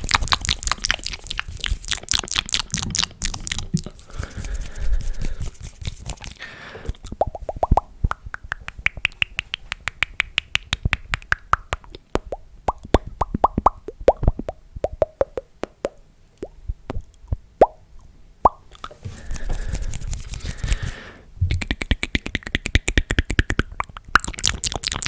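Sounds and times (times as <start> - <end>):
mouth clicks and pops: 0.0 - 25.0
breathy mouth hissing: 19.2 - 21.2.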